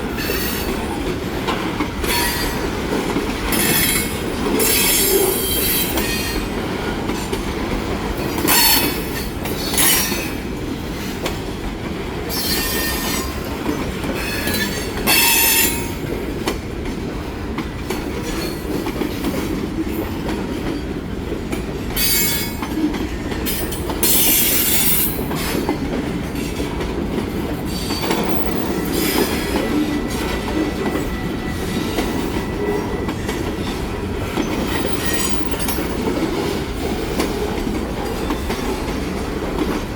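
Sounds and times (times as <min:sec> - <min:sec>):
train wheels rumbling on rail: 0:00.0 - 0:39.9
wheel squeal and clatter: 0:34.3 - 0:36.3.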